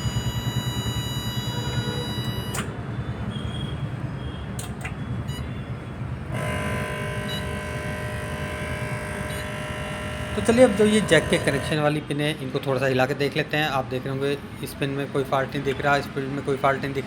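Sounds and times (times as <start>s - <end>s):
click: 2.2s - 2.7s, 4.6s - 5.0s
inverter rattling buzz: 6.2s - 11.8s
high whine: 6.3s - 11.8s.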